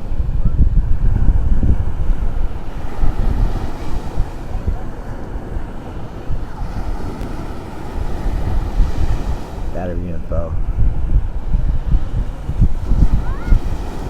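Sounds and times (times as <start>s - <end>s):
ocean surf washing: 0.0s - 14.0s
wind gusting over microphone: 0.0s - 14.0s.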